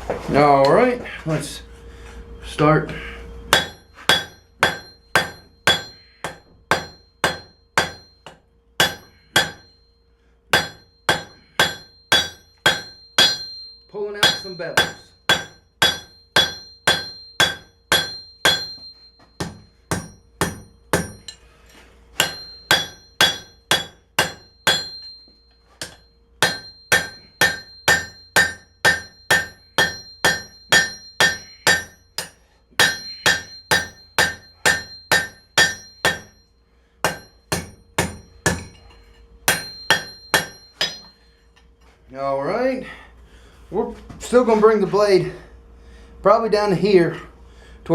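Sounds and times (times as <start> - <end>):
hammer ringing on hot steel: 3.4 - 21.5, 22.1 - 41.7.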